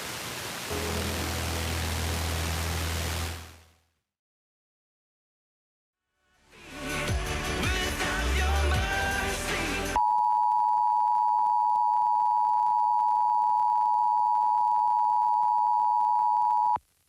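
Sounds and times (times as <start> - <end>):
music: 0.7 - 3.4, 6.0 - 10.0.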